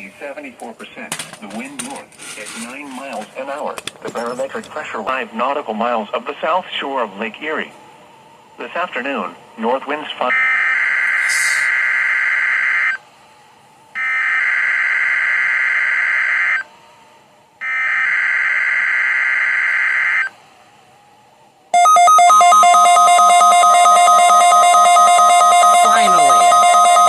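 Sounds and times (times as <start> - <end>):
buzzy electronic alert tone: 21.8 - 27.0
screeching data bursts: 21.8 - 27.0.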